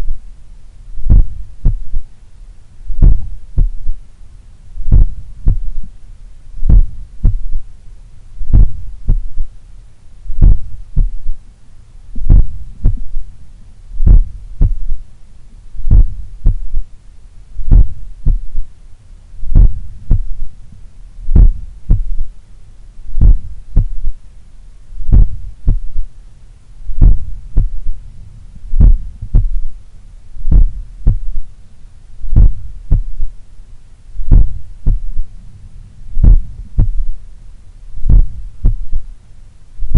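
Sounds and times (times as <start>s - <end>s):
heartbeat through stethoscope: 1.0s - 2.1s, 2.9s - 4.0s, 4.8s - 5.9s, 6.6s - 7.6s, 8.4s - 9.5s, 10.3s - 11.4s, 12.2s - 13.2s, 14.0s - 15.0s, 15.8s - 16.9s, 17.6s - 18.7s, 19.4s - 20.5s, 21.3s - 22.3s, 23.1s - 24.2s, 25.0s - 26.1s, 26.9s - 28.0s, 28.7s - 29.8s, 30.4s - 31.5s, 32.3s - 33.3s, 34.2s - 35.3s, 36.2s - 37.2s, 38.0s - 39.1s.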